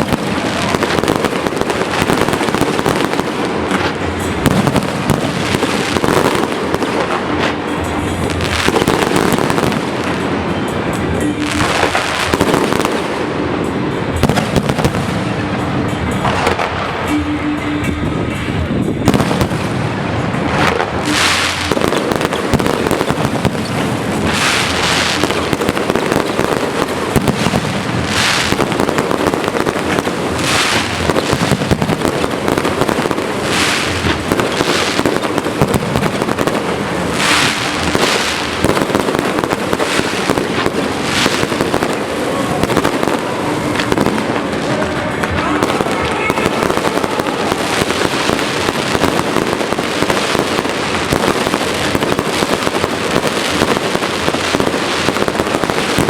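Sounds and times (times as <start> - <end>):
fireworks popping and crackling: 0.0 - 56.0
fireworks hissing bursts: 18.4 - 56.0.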